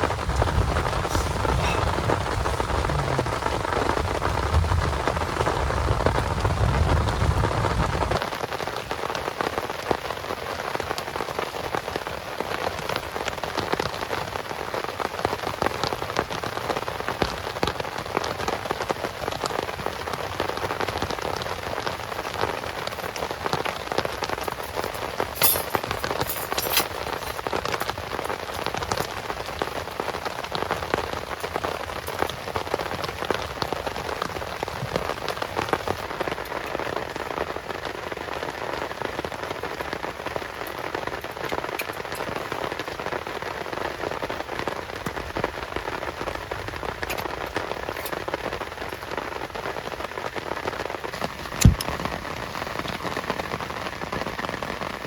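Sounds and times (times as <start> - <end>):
low rumble: 0.0 - 8.2
heavy rain falling: 0.0 - 55.0.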